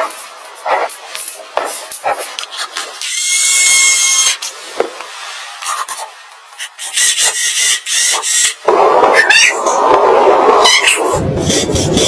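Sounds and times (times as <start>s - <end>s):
hand tool rasping wood: 6.6s - 8.6s, 11.4s - 12.0s.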